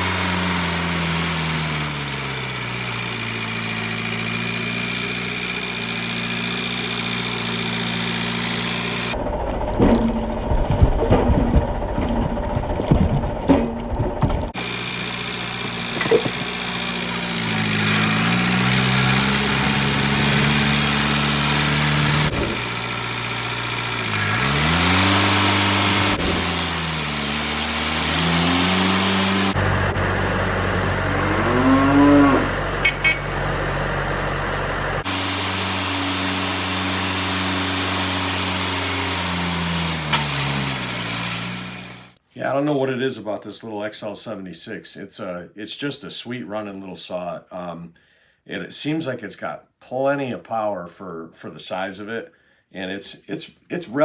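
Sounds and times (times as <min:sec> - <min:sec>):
chainsaw cutting wood: 0:00.0 - 0:09.2, 0:14.5 - 0:42.2.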